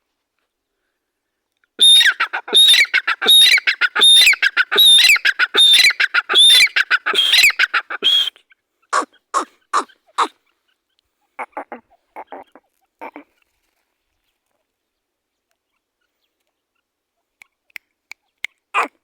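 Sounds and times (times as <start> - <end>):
francolin calling: 1.8 - 8.3.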